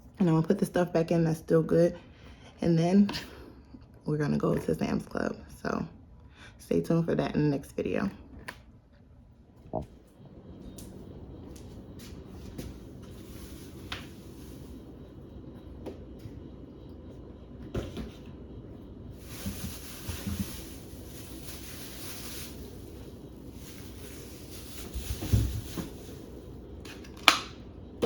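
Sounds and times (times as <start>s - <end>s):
hissing rustle: 19.2s - 26.4s.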